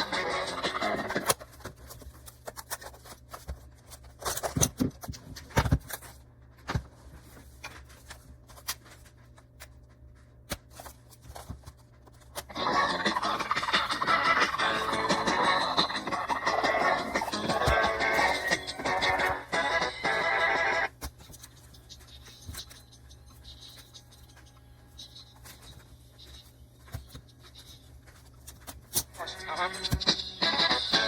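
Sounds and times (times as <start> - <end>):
background music: 0.0 - 1.4, 12.4 - 20.9, 29.2 - 31.0.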